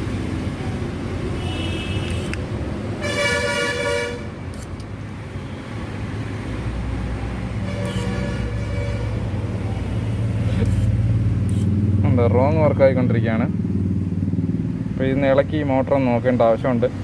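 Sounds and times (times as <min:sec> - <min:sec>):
vehicle horn toot: 0:01.4 - 0:02.3, 0:03.0 - 0:04.2, 0:07.7 - 0:09.2.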